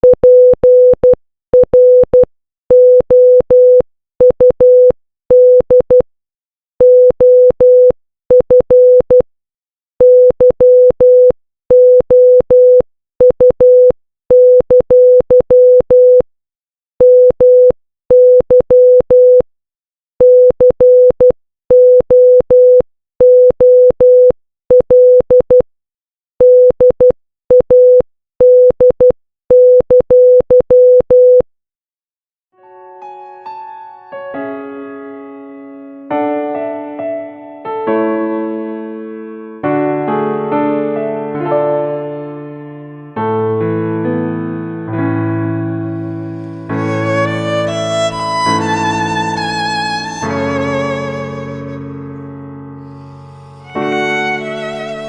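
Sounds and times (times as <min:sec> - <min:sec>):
morse code beeps: 0:00.0 - 0:06.0, 0:06.8 - 0:09.2, 0:10.0 - 0:16.2, 0:17.0 - 0:19.4, 0:20.2 - 0:25.6, 0:26.4 - 0:31.4.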